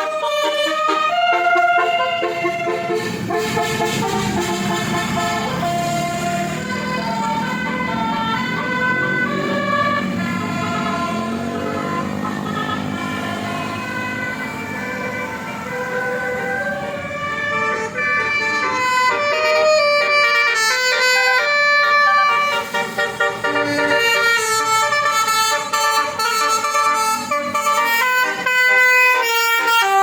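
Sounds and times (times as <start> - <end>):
musical bus horn playing tune: 0.0 - 30.0.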